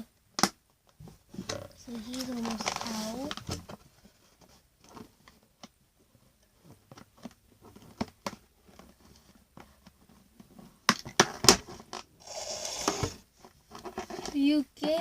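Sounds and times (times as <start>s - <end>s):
plastic packaging clicks and crackles: 2.0s - 3.6s.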